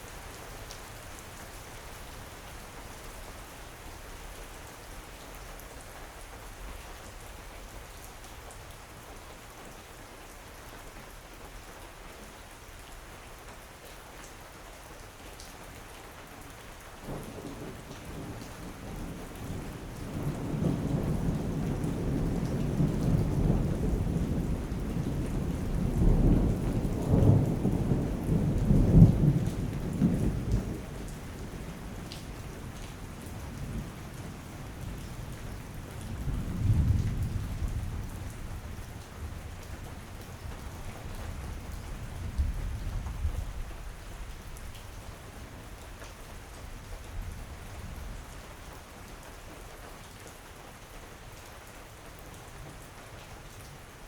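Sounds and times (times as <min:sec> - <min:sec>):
steady rain: 0:00.0 - 0:54.0
rolling thunder: 0:35.8 - 0:39.6.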